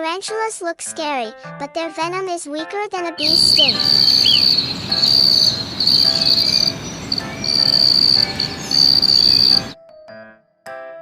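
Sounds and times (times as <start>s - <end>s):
insect trilling: 3.2s - 9.8s
noisy background: 3.2s - 9.8s.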